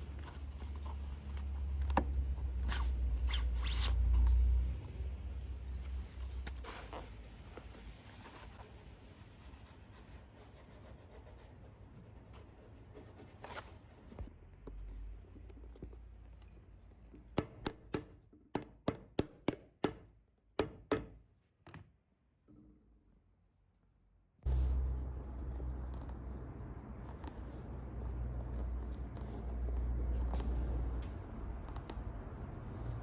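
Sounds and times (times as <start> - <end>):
rubbing and handling noise: 0.0 - 4.5, 5.5 - 17.2, 24.5 - 33.0.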